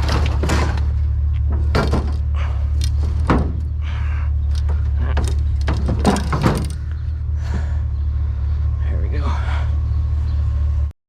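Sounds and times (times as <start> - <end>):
scrap metal clattering: 0.0 - 3.8, 4.6 - 6.9
truck engine idling: 0.0 - 10.9.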